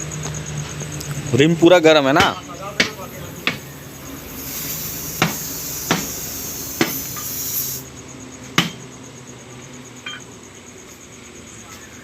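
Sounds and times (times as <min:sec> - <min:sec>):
steady hiss: 0:00.9 - 0:08.0
hammer blows on metal rim: 0:02.2 - 0:07.8.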